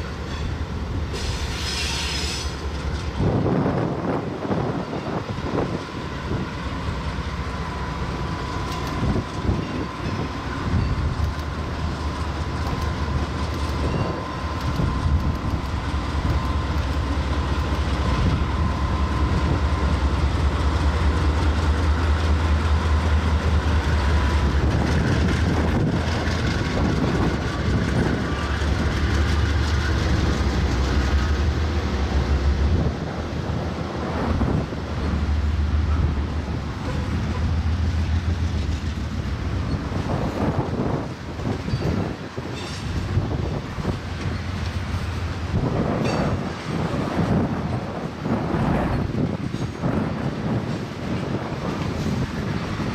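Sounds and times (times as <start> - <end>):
diesel locomotives rumbling: 0.0 - 52.9.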